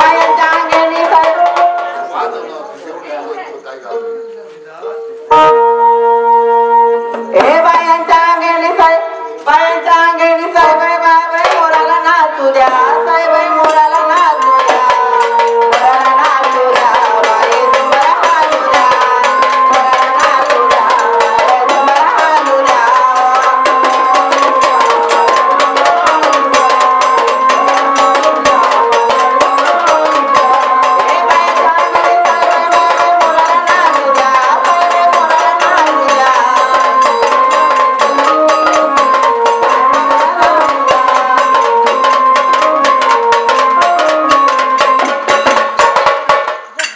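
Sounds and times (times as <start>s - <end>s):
fast hand-drum beats: 0.0s - 2.4s, 10.5s - 46.8s
wavering melody: 0.0s - 2.5s, 5.0s - 8.2s, 11.7s - 46.4s.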